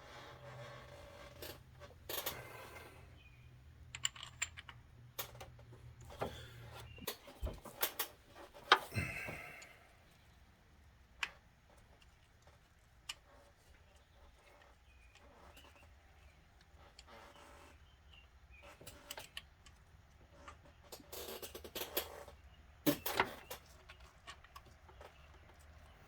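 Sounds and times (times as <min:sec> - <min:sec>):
small metal parts clicking: 0:03.9 - 0:05.5.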